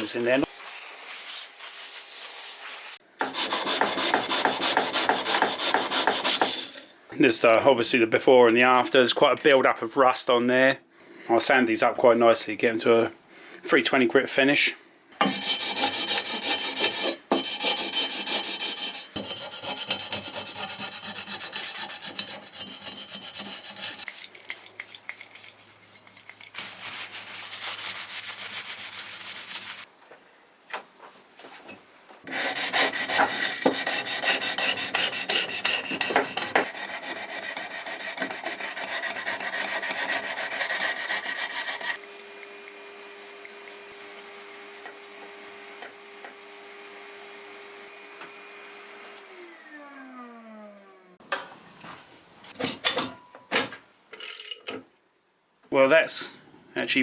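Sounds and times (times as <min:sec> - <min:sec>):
sandpaper rubbing on metal: 0:00.1 - 0:06.8, 0:15.2 - 0:29.9, 0:32.3 - 0:43.8.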